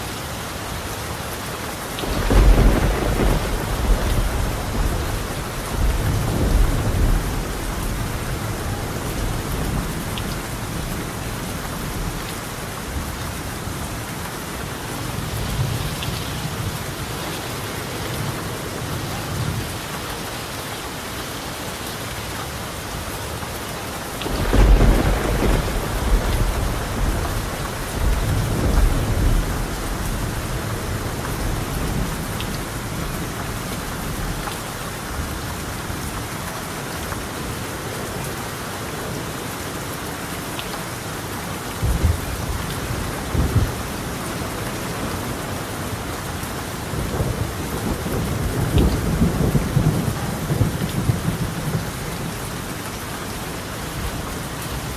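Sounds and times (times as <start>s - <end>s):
rain on a tiled roof: 0.0s - 54.9s
rolling thunder: 2.0s - 11.2s, 24.2s - 33.4s, 46.9s - 52.4s.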